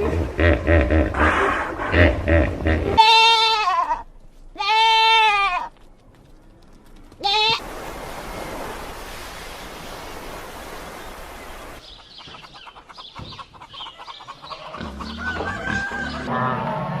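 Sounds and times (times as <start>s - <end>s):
chickens clucking: 11.8s - 16.3s
rooster crowing: 15.1s - 16.8s.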